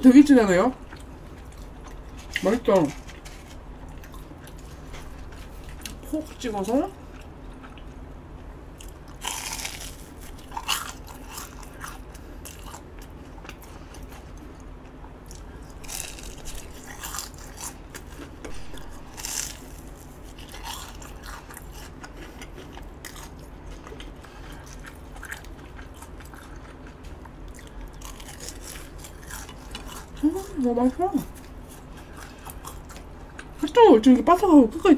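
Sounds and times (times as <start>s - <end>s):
soft chewing: 0.7s - 33.8s
crispy crust crunching: 8.8s - 33.6s.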